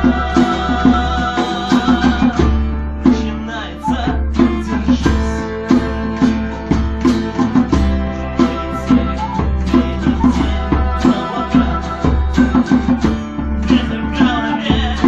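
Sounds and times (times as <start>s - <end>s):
acoustic guitar and plucked strings: 0.0s - 15.0s.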